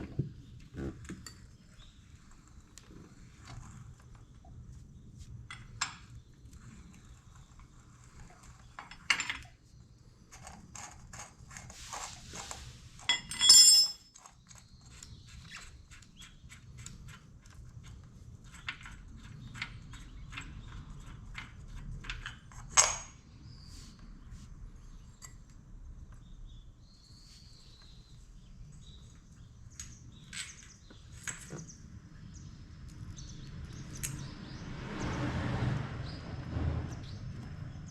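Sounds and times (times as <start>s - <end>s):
metal parts clicking and clinking: 13.0s - 14.6s
ringing metal clink: 13.1s - 14.2s.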